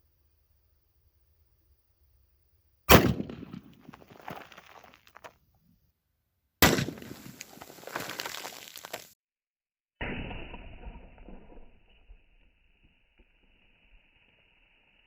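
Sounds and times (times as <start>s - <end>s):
rifle shot crack: 2.9s - 4.0s, 6.6s - 7.6s.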